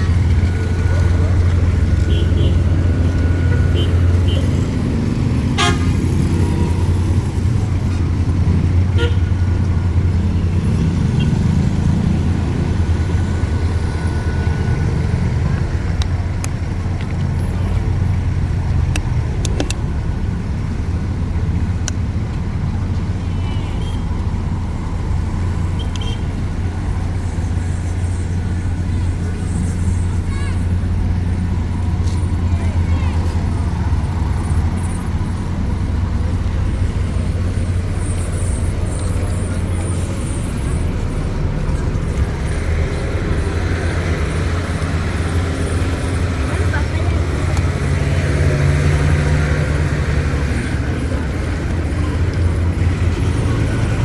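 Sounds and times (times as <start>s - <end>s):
car horns tooting: 0.0s - 4.8s, 5.4s - 6.9s, 8.8s - 9.5s, 23.1s - 24.3s, 25.8s - 26.4s
road traffic rumble: 0.0s - 54.0s.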